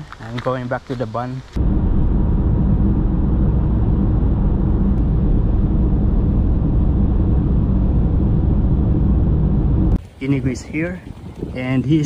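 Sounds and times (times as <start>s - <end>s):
road noise: 0.0s - 10.7s
vehicle engine drone: 1.6s - 10.0s.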